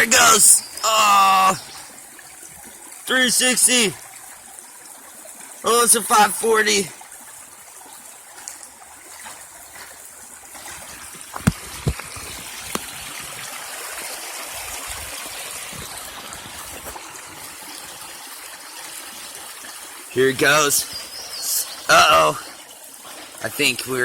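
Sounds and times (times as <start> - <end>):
stream trickling: 0.0 - 24.0.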